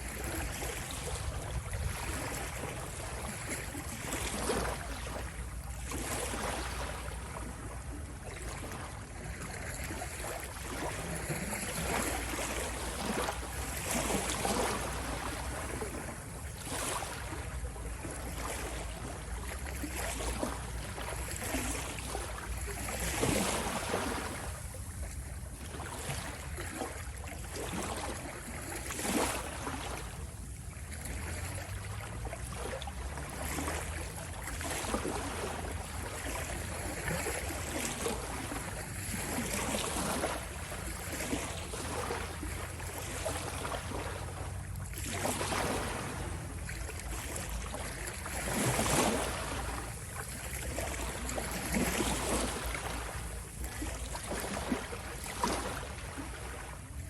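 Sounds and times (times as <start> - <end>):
ocean waves washing: 31.0 - 57.0.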